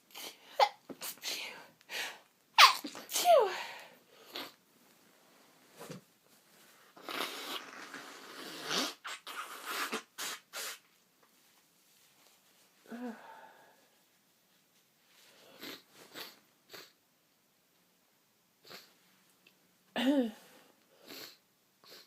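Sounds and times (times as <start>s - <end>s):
woman sneezing: 2.6s - 3.7s
sniffs and noisy breaths: 20.6s - 22.0s.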